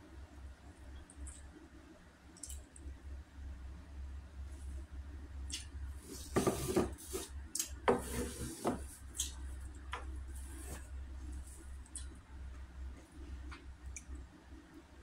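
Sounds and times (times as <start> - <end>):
knocks and scrapes against plate: 6.3 - 8.9.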